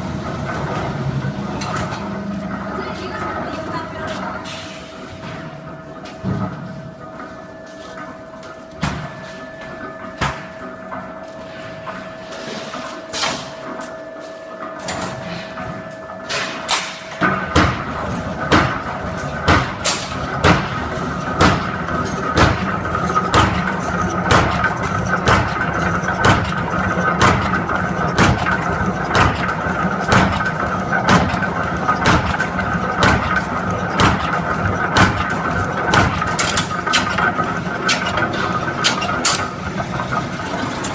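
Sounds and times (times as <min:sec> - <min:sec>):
machine hum: 0:00.0 - 0:40.9
machine punching knocks: 0:16.3 - 0:38.2.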